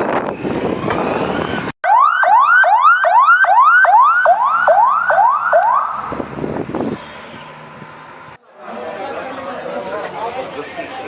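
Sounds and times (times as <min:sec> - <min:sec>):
emergency vehicle siren yelping: 0:00.3 - 0:06.5
street commotion with voices: 0:04.1 - 0:11.0.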